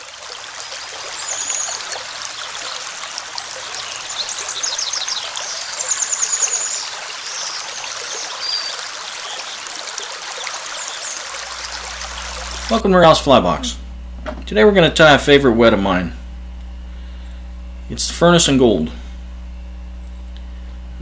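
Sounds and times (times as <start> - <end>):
stream water running: 0.0 - 15.8.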